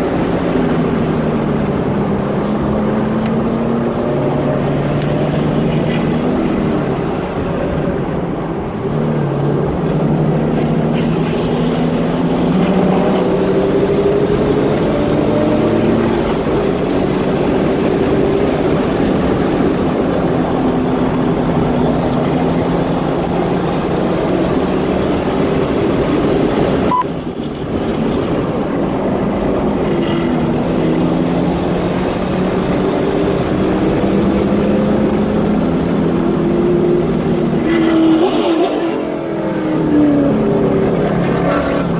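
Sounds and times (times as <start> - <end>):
car engine revving: 0.0 - 41.9.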